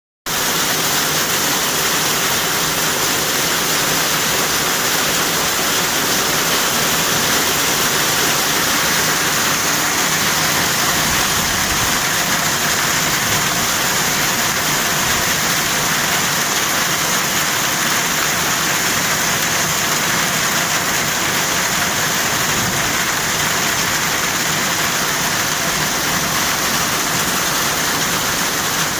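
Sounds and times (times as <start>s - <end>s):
heavy rain falling: 0.3s - 28.9s.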